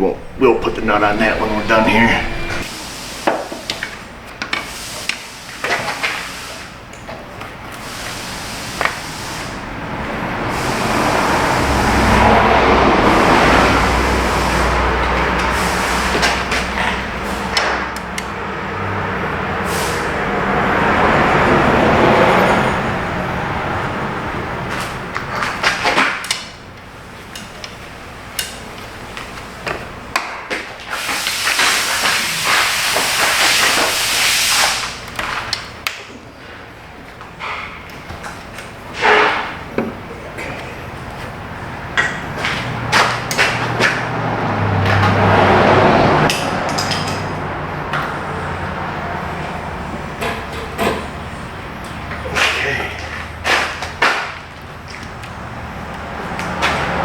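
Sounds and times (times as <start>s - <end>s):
low hum: 0.0s - 2.7s
hissing noise swells: 0.0s - 3.1s.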